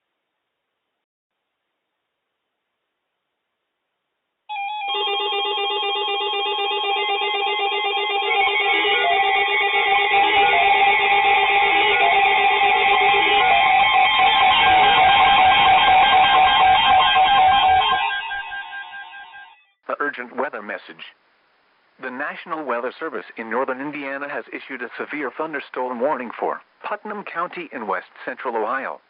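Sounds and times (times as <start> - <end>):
instrumental music: 4.5 - 19.5.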